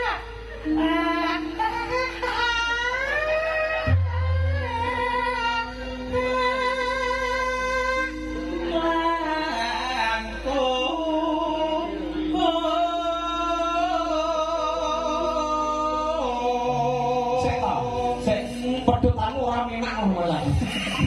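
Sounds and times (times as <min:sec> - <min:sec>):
woman singing long notes: 0:00.0 - 0:18.8
instrumental accompaniment: 0:00.0 - 0:21.0.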